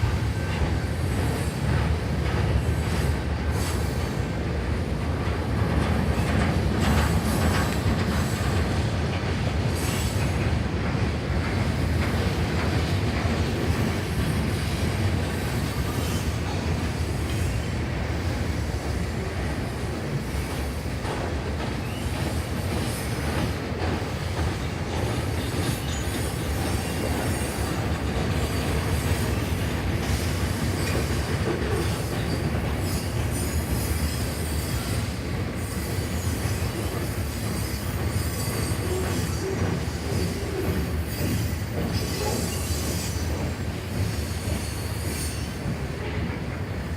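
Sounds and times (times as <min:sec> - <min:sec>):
freight train wheels rumbling on rail: 0:00.0 - 0:46.9.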